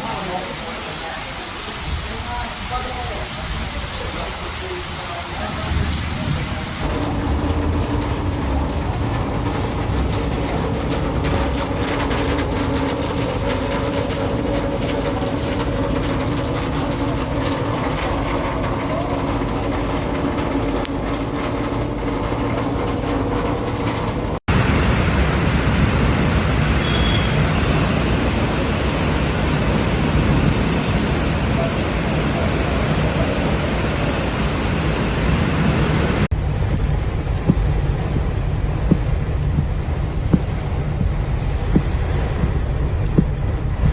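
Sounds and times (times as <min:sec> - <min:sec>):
heavy rain and wind: 0:00.0 - 0:43.9
steady hum: 0:36.3 - 0:43.9.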